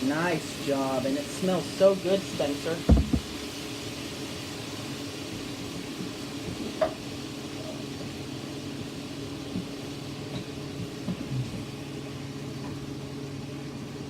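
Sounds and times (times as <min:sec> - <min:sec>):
food sizzling in a pan: 0:00.0 - 0:14.0.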